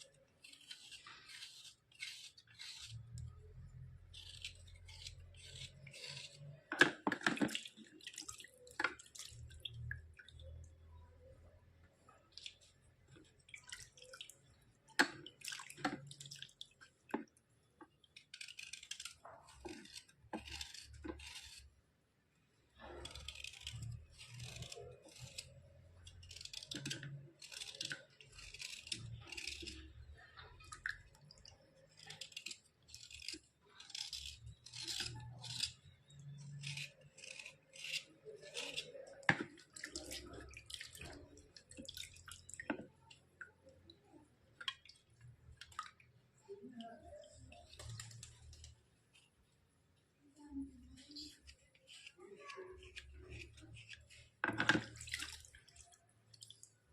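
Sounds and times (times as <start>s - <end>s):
slate pencils scraping: 0.0s - 7.9s, 18.2s - 21.7s, 22.8s - 30.6s, 31.8s - 43.3s, 50.8s - 55.8s.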